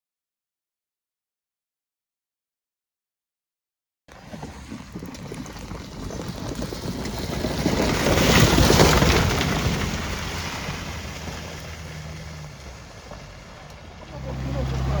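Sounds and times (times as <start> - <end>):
tyres churning and splashing mud: 4.1 - 15.0
car engine: 6.6 - 15.0.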